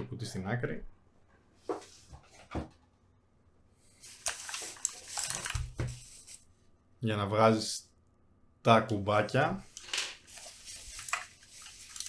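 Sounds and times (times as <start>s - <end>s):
plastic wrapping rustling: 4.0s - 6.4s, 9.8s - 12.0s.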